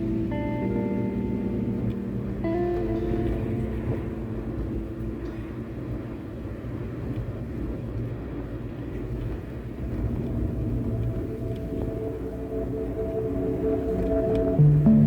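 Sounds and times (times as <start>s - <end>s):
guitar music: 0.0s - 6.8s, 14.6s - 15.0s
steady low rumbling: 0.0s - 15.0s.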